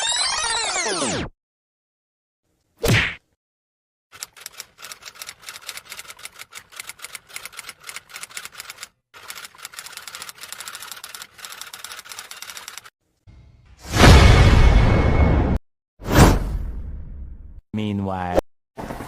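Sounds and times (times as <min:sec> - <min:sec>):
keyboard keys typing: 0:04.2 - 0:12.9.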